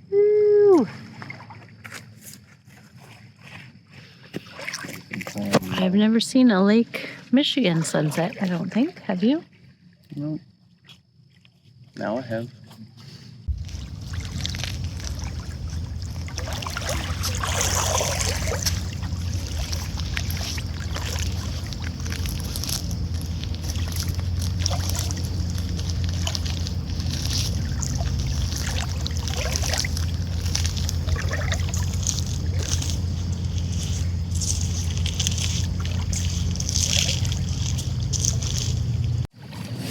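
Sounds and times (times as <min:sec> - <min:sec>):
small waves lapping shore: 0:07.6 - 0:09.4, 0:13.5 - 0:39.9
steady low rumble: 0:13.4 - 0:39.3.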